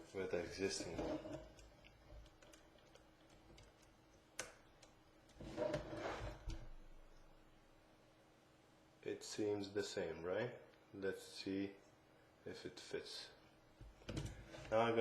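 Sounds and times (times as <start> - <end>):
rubbing and knocking: 5.4 - 6.6.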